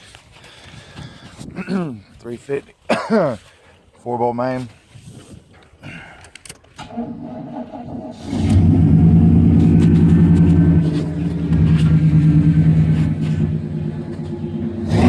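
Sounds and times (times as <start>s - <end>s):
engine running: 6.9s - 15.0s.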